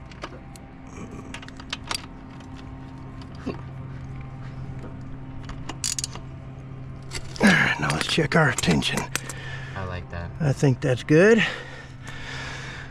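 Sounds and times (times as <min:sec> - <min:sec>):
steady low hum: 0:00.0 - 0:12.9
hand tools clicking on metal: 0:07.1 - 0:09.4.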